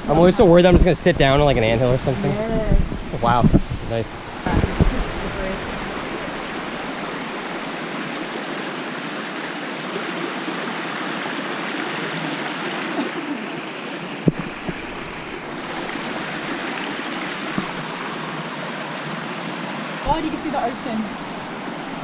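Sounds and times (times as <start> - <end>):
waterfall rushing over rocks: 0.0 - 22.0
sharp knocks: 14.2 - 15.1.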